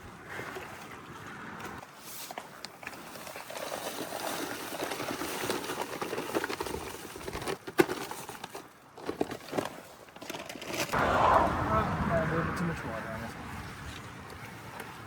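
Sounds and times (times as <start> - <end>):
concrete mix churning: 1.6 - 7.5.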